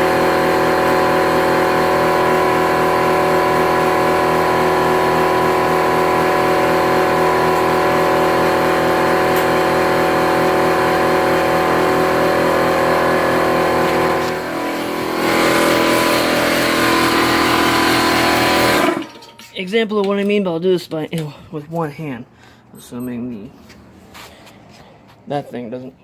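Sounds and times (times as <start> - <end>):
air compressor pump running: 0.0 - 19.1.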